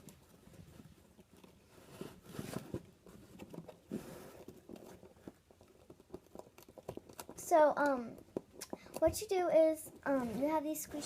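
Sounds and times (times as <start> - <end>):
soft handling knocks and rustles: 0.0 - 7.4.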